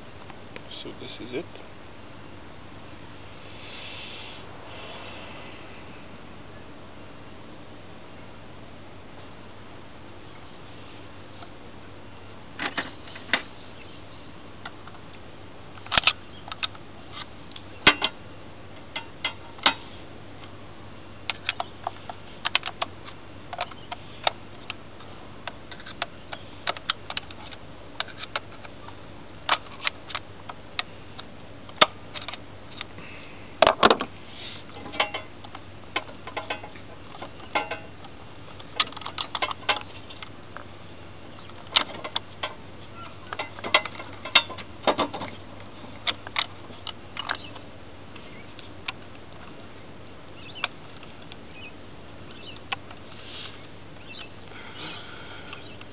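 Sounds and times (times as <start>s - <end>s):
hand tools clicking and knocking: 34.8s - 35.3s, 36.0s - 37.9s.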